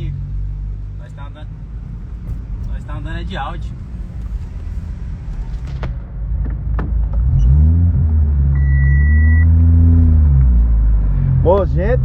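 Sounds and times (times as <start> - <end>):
deep subwoofer bass tones: 0.0 - 12.0
vehicle rumble: 0.0 - 12.0
short high beep: 8.6 - 9.5.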